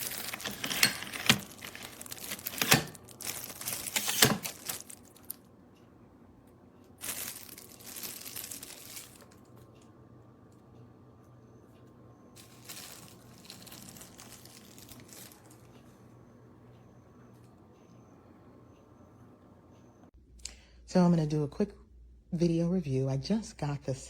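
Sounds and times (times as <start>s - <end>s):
rustling and crinkling: 0.0s - 5.4s, 7.0s - 9.8s, 12.4s - 16.0s.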